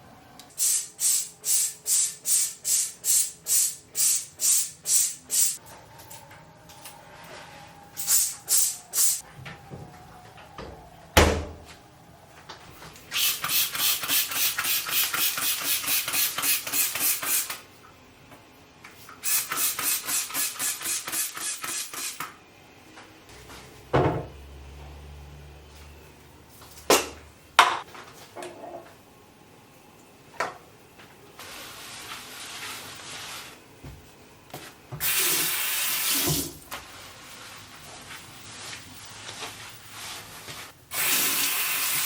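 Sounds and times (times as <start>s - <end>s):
spray bottle squirts: 0.6s - 5.6s, 8.0s - 9.2s, 19.2s - 22.2s.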